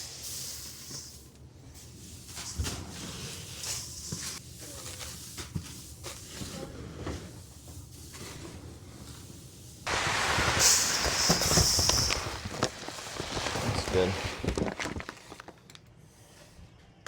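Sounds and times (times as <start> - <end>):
dry feed pouring hiss: 0.0 - 1.3, 9.8 - 15.4
knocks and rustles of dry feed: 9.9 - 15.6.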